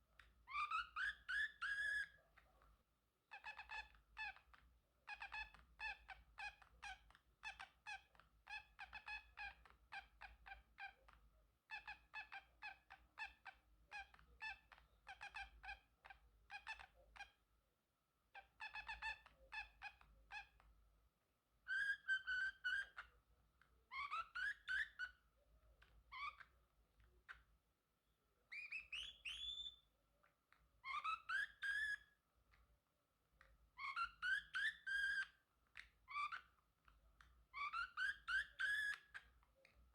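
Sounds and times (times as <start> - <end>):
parrotlet chirping and calling: 0.2 - 2.2, 3.3 - 11.1, 11.7 - 17.4, 18.3 - 20.7, 21.6 - 23.1, 23.9 - 25.2, 25.8 - 26.6, 27.2 - 27.5, 28.5 - 29.9, 30.5 - 32.2, 33.4 - 36.6, 37.2 - 39.4.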